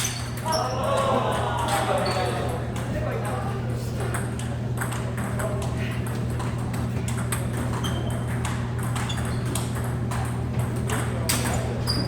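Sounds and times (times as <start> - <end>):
table tennis balls clicking: 4.0 - 11.6.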